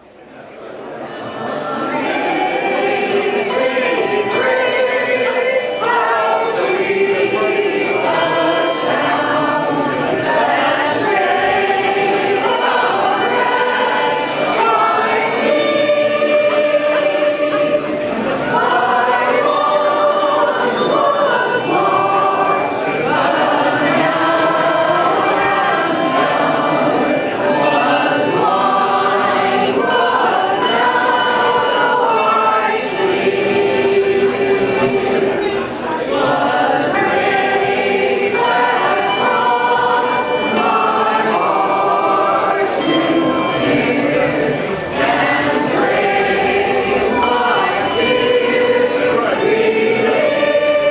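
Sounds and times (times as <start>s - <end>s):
choir singing a hymn: 0.0s - 50.9s.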